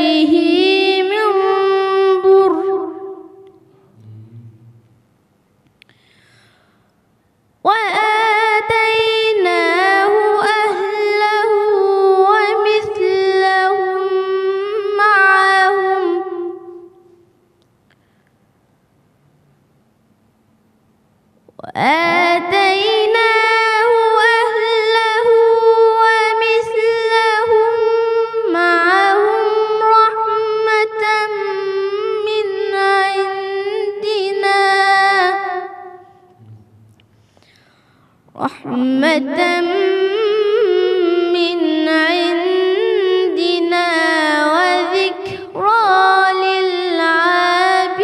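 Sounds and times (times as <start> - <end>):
high voice melodic recitation: 0.0 - 4.6, 7.7 - 17.1, 21.6 - 36.7, 38.4 - 48.0
person chanting recitation: 0.0 - 5.0.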